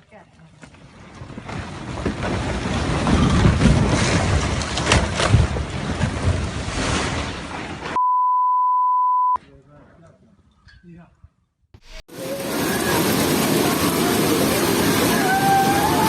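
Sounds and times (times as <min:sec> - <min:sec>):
rockfall crashing and rumbling: 0:00.8 - 0:07.8
censor bleep: 0:08.0 - 0:09.4.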